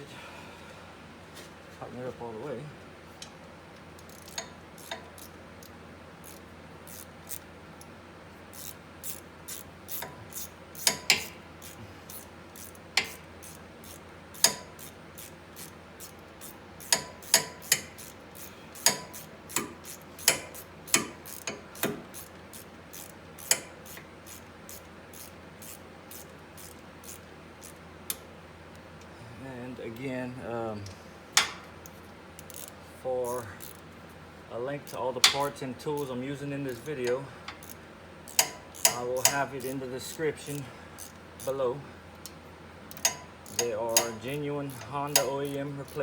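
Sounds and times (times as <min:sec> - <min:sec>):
hand ratchet clicking: 0:04.0 - 0:28.2, 0:31.4 - 0:33.9, 0:34.8 - 0:41.6, 0:42.2 - 0:46.0.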